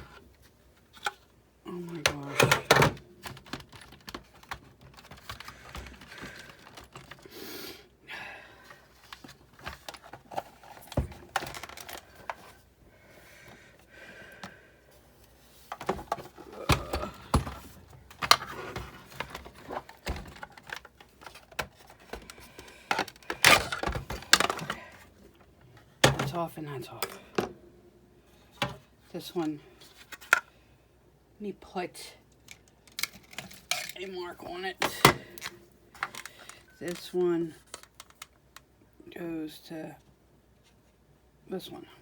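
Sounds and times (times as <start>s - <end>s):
clicks and rattles of parts handled: 1.9s - 7.3s, 9.0s - 12.6s, 15.6s - 26.4s, 32.3s - 34.1s, 34.8s - 38.7s.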